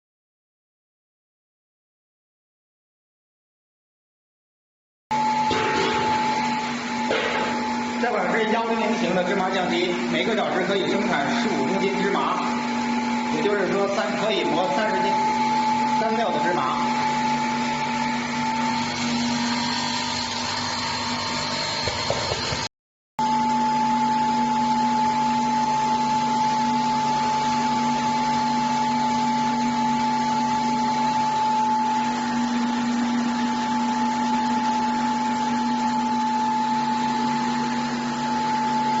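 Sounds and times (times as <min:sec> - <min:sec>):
stone grinder motor whining: 0:05.2 - 0:22.7.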